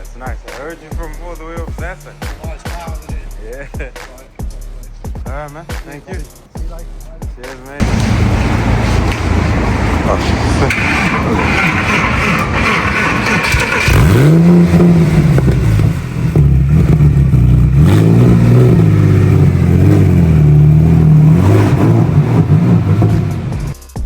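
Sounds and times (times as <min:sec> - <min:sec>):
car engine revving: 0:07.8 - 0:23.8.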